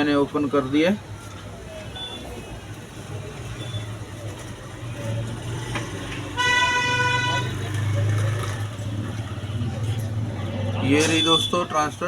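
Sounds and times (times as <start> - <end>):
vehicle horn blast: 6.4 - 7.6.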